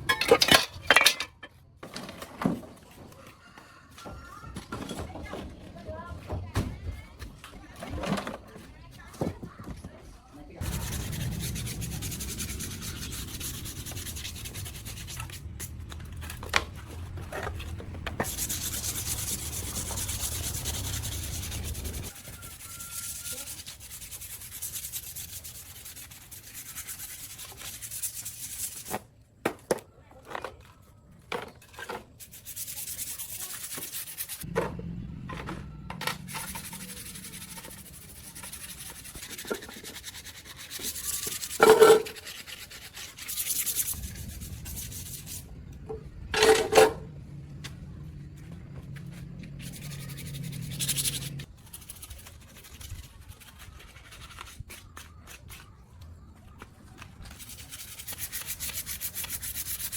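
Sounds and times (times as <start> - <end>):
abrasive sanding: 10.6 - 29.0, 32.1 - 34.5, 36.0 - 46.2, 48.2 - 55.7, 57.2 - 59.9
motor hum: 34.5 - 37.9.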